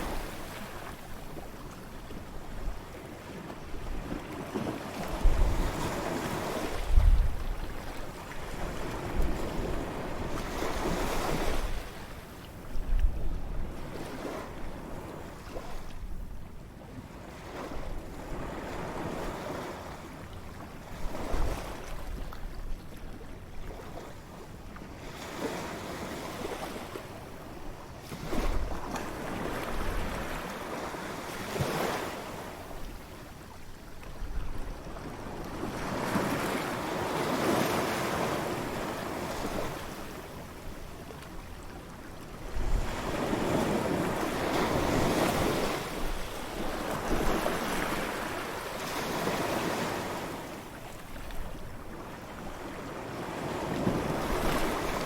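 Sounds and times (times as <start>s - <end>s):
ocean waves breaking on beach: 0.0s - 2.3s, 34.8s - 55.0s.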